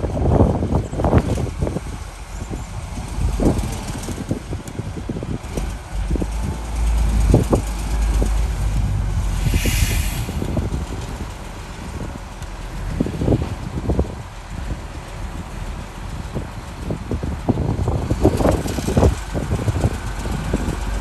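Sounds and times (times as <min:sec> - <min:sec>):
diesel engine rumble: 0:00.0 - 0:21.0
hissing burst: 0:07.6 - 0:10.9.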